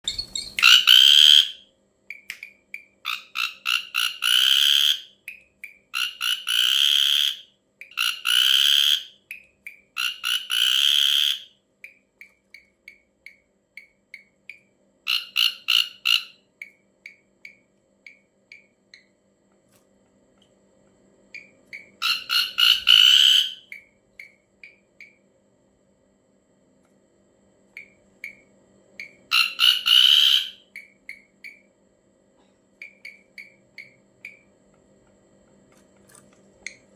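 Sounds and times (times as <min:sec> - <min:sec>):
bird harsh rasping calls: 0:00.1 - 0:01.6, 0:21.7 - 0:24.4, 0:29.0 - 0:31.2.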